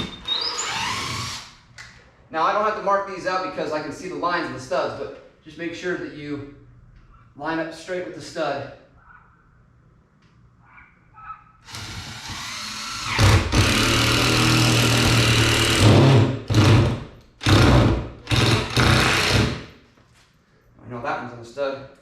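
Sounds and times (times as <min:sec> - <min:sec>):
power drill driving screws: 0:00.0 - 0:01.5, 0:11.7 - 0:19.6.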